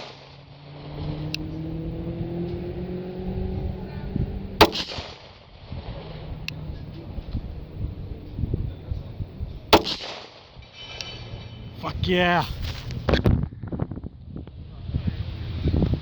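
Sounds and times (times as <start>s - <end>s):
low hum with rising tone: 0.5s - 4.7s, 5.7s - 9.7s
pistol shot with echo: 4.6s - 5.3s, 9.7s - 10.5s
faint sharp cracks: 4.6s - 5.4s, 9.7s - 11.1s.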